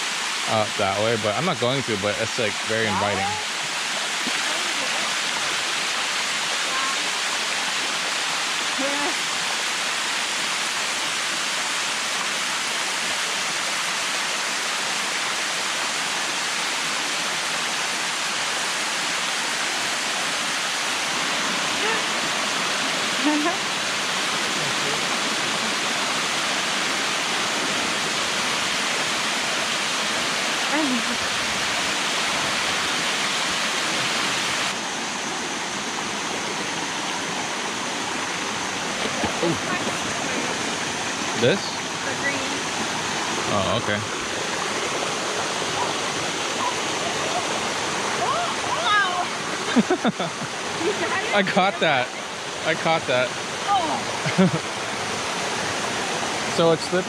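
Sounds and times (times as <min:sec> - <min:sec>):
waterfall rushing: 0:00.0 - 0:57.0.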